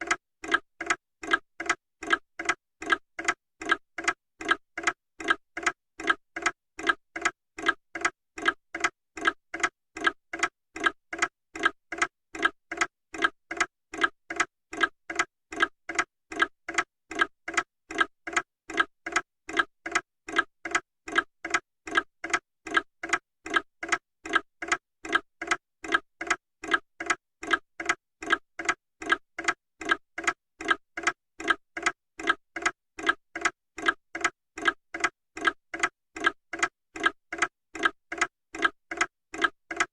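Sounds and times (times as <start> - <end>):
clock ticking: 0.0 - 39.9.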